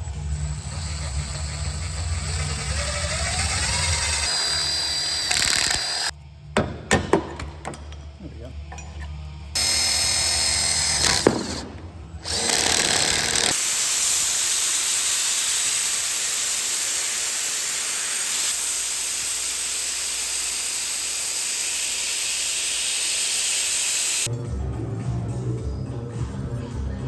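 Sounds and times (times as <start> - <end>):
power tool whining: 0.0 - 6.1, 9.6 - 24.3
power tool click: 2.6 - 6.1, 9.6 - 24.3.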